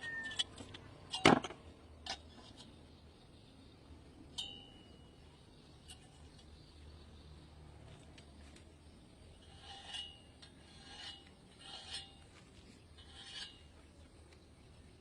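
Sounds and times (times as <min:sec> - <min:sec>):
faint rasping scrapes: 0:09.2 - 0:14.2.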